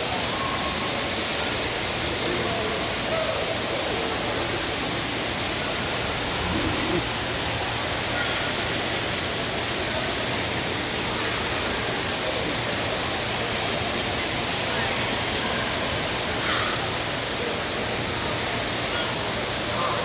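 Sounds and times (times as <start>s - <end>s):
steady rushing noise: 5.2s - 8.2s.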